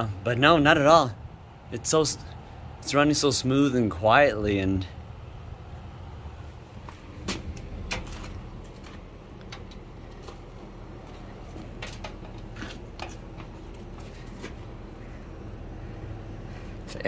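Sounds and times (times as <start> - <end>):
condenser unit humming: 0.0 - 17.0
light clicks and taps: 7.3 - 10.5.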